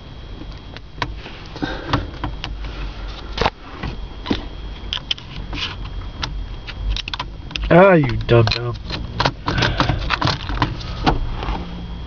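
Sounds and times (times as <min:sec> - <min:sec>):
clicks and knocks of small parts: 0:06.9 - 0:10.8.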